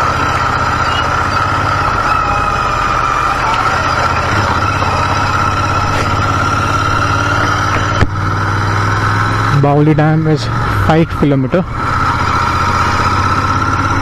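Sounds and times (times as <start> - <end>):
motorcycle engine running: 0.0 - 14.0.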